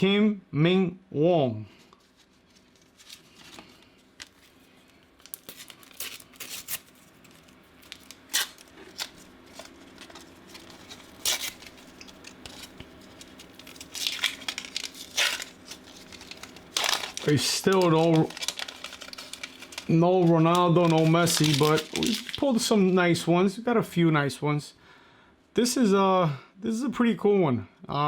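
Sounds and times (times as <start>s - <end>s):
paper tearing and crinkling: 5.2s - 22.7s.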